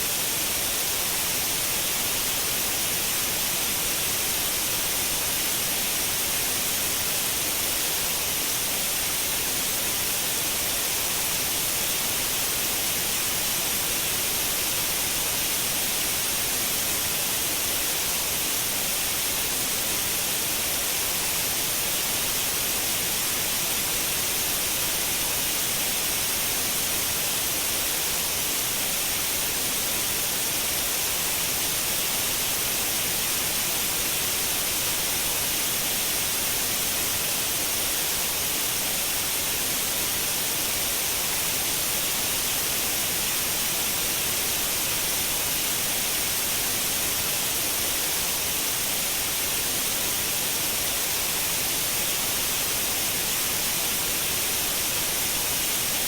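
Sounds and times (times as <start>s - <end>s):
white noise hiss: 0.0s - 56.0s.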